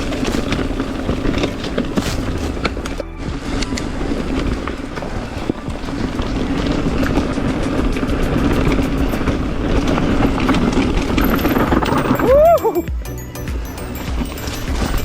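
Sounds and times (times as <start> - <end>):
bike tires rumbling over rock: 0.0 - 12.8
knocks and clicks: 10.4 - 15.0.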